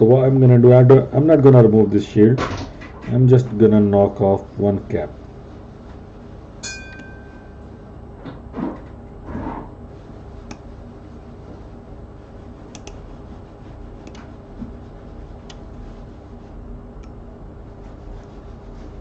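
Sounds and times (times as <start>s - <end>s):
low steady hum: 0.0s - 19.0s
metallic tool clink: 6.6s - 7.6s
soft scrapes: 17.7s - 19.0s.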